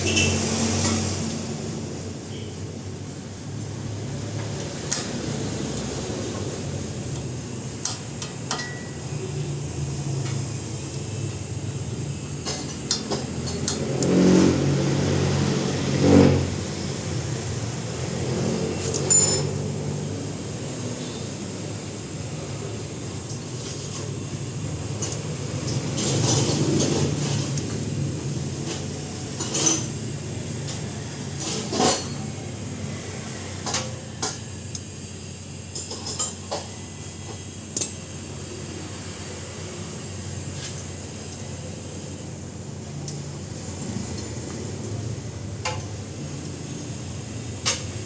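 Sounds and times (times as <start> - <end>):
metal tools clinking: 18.8 - 19.6.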